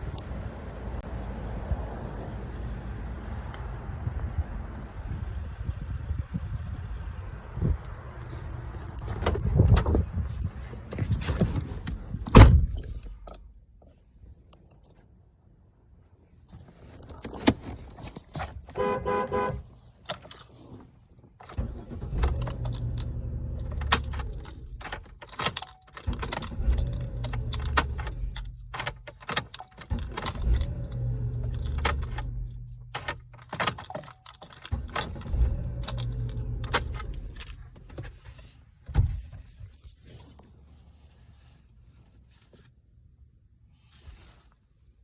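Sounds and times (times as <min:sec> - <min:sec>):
car engine cranking and starting: 0:16.7 - 0:40.4
car horn toot: 0:18.7 - 0:19.7
keys jangling: 0:23.6 - 0:37.9.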